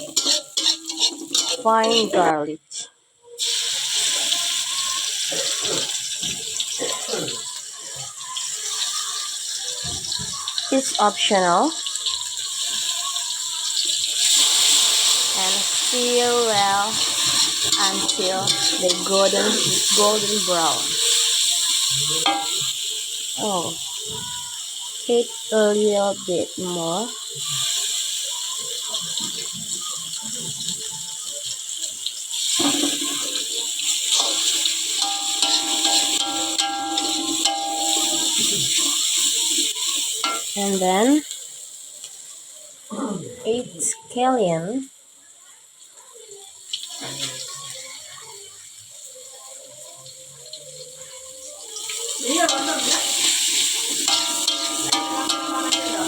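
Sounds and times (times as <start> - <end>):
spatula scraping a wok: 0.0 - 2.4, 14.2 - 22.7, 32.6 - 40.6, 52.3 - 56.0
onion and garlic sizzling in oil: 0.0 - 56.0.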